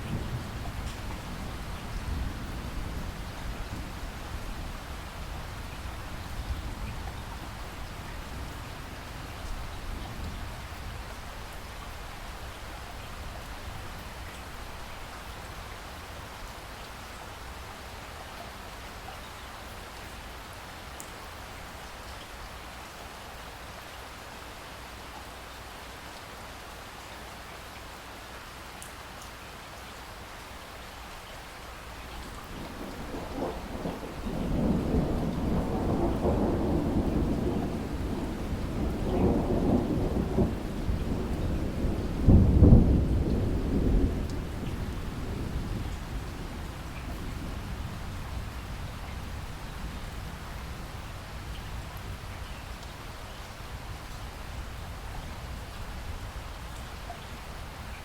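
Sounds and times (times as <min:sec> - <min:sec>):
steady rain falling: 0:00.0 - 0:58.0
thunder rumbling: 0:32.5 - 0:52.3.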